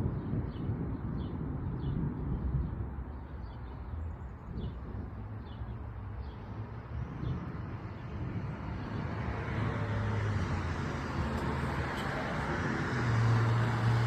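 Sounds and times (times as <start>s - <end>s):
low rumble of road traffic: 0.0s - 14.0s
vehicle approaching: 6.5s - 14.0s.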